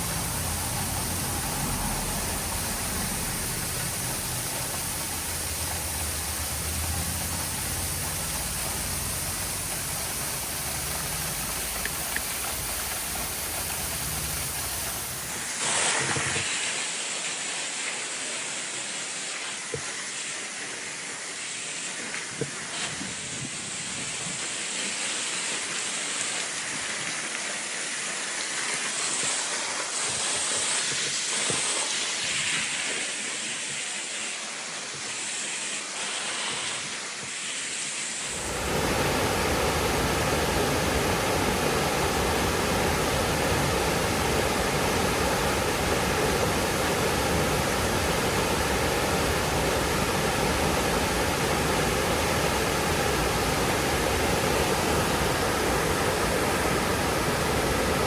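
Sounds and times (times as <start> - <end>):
waterfall rushing: 38.2 - 58.0.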